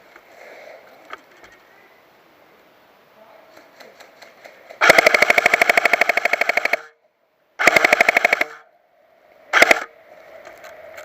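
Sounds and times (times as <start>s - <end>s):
airsoft gun firing full-auto: 4.8s - 6.9s, 7.6s - 8.6s, 9.5s - 9.9s.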